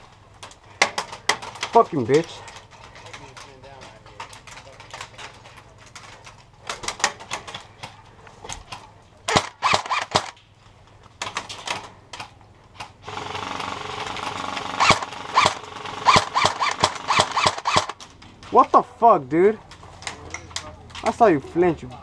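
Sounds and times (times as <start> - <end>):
airsoft guns firing: 9.2 - 10.4, 13.0 - 18.1.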